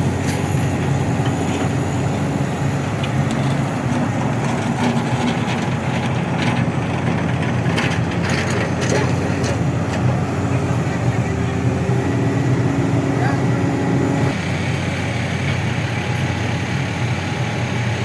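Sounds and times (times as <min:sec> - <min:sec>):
diesel engine running: 0:00.0 - 0:18.0
metal clanks and rattles: 0:03.0 - 0:10.2.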